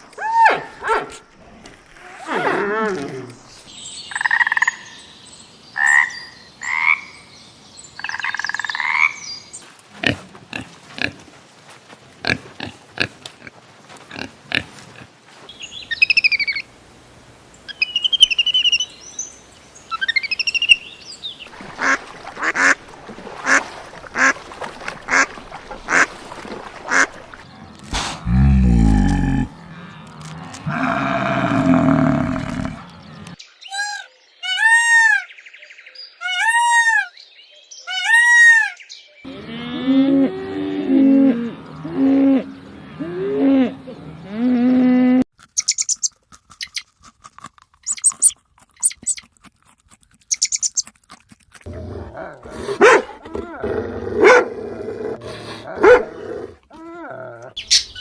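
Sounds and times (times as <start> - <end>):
animal calls and chirps: 15.6 - 16.7, 17.7 - 21.0, 45.6 - 46.8, 47.8 - 49.3, 50.3 - 50.9, 57.5 - 58.0.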